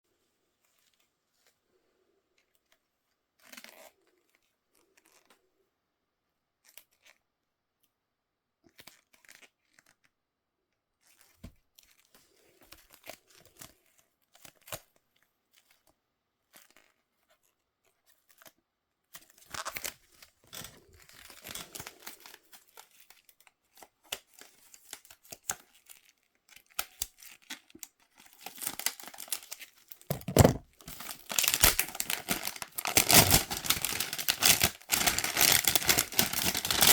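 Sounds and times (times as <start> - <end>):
cardboard and plastic tearing: 27.2 - 36.9.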